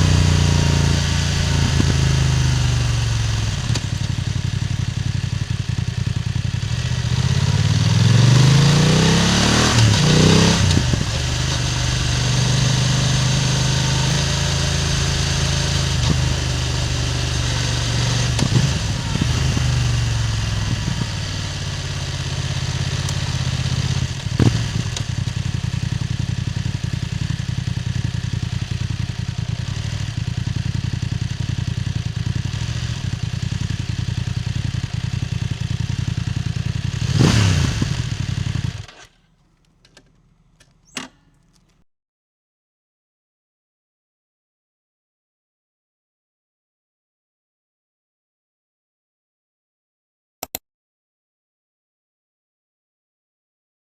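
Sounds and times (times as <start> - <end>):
motorcycle exhaust revving: 0.0 - 38.8.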